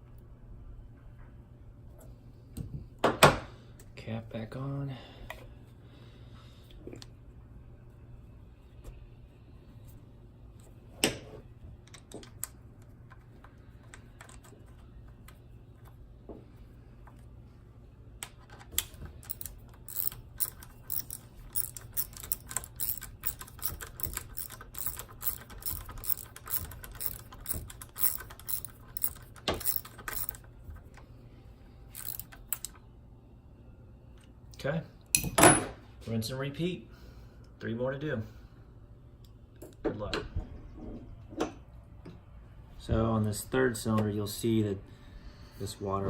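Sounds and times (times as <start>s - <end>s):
tools and engine parts clattering: 19.2s - 30.4s, 32.0s - 32.7s.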